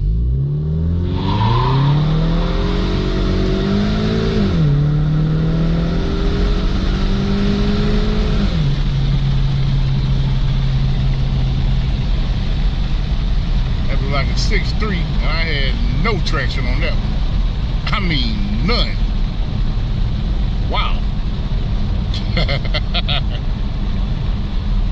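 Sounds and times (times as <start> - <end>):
car engine accelerating hard: 0.0 - 24.9.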